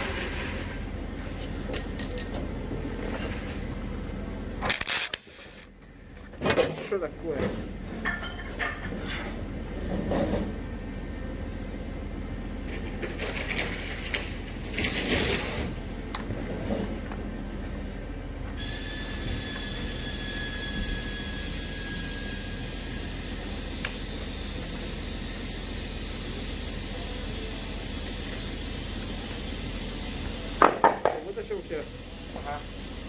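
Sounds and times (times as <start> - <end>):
high-pitched whine with hiss: 18.6 - 30.6.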